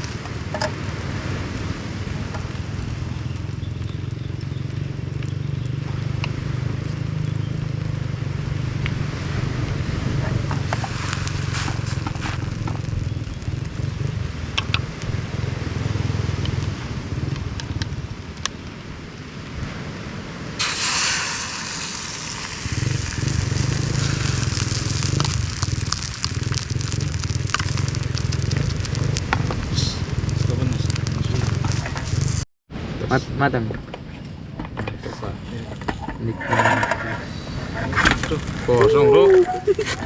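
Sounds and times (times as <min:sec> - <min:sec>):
bright hiss: 0:00.0 - 0:03.6, 0:10.5 - 0:13.6, 0:20.6 - 0:32.4
food sizzling in a pan: 0:00.0 - 0:03.7, 0:10.6 - 0:13.6, 0:20.6 - 0:32.4
low steady rumble: 0:20.6 - 0:32.4.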